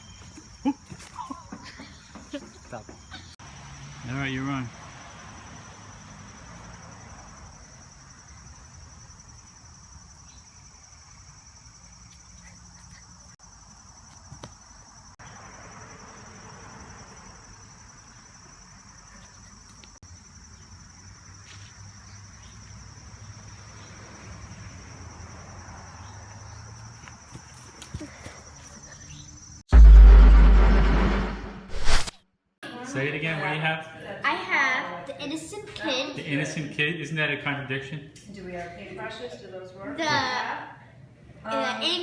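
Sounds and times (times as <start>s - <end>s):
insects trilling: 0.0s - 29.6s.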